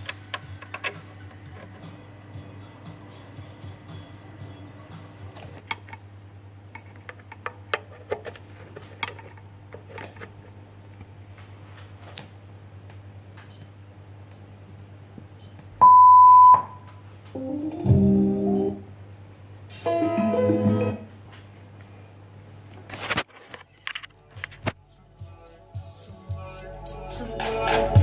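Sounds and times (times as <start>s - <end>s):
low steady hum: 0.0s - 22.8s
low steady beep: 8.4s - 16.8s
test tones from speaker: 14.3s - 16.8s.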